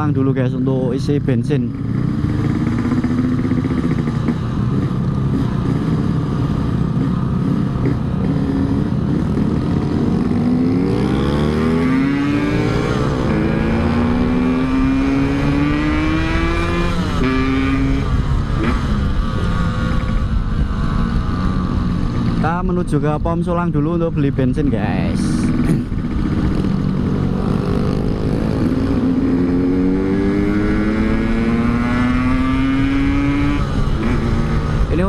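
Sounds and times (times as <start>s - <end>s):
motorcycle two-stroke engine: 1.6s - 22.4s.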